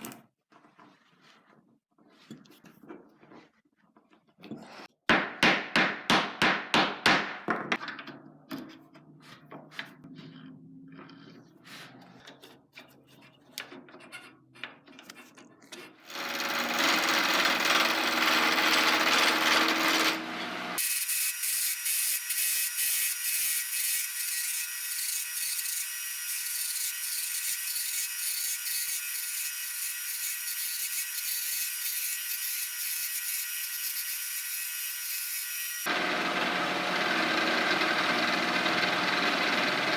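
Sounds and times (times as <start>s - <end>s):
power tool running: 16.1s - 39.9s.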